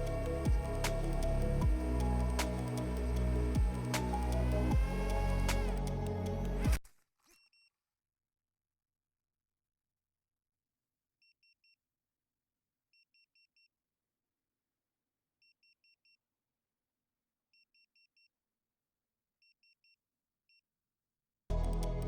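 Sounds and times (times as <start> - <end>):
music: 0.0 - 6.8, 21.5 - 22.0.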